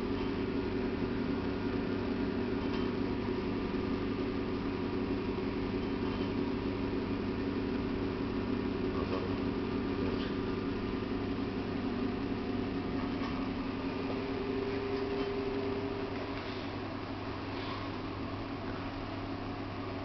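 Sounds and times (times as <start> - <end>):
stove fans humming: 0.0 - 20.0.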